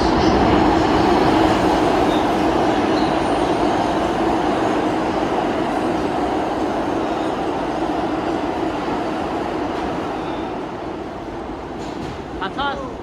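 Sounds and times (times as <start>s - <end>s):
subway train rumbling on rails: 0.0s - 13.0s.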